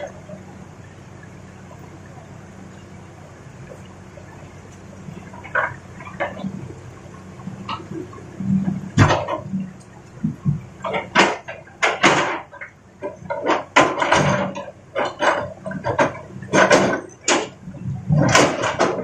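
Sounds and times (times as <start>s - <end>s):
excavator engine hum: 0.0s - 19.0s
rocks knocking and clattering: 7.5s - 19.0s.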